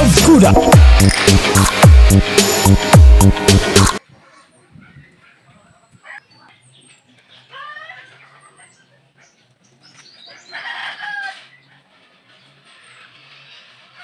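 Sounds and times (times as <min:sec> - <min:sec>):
rooster crowing: 0:10.4 - 0:11.6.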